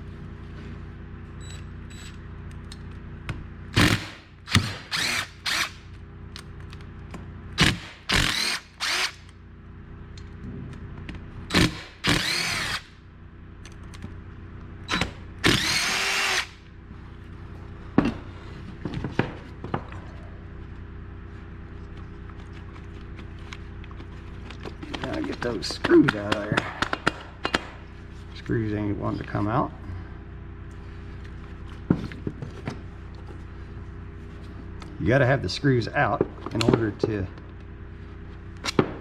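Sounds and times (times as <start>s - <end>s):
cordless drill whirring: 3.8s - 5.8s, 7.6s - 9.3s, 11.5s - 12.9s, 14.9s - 16.6s.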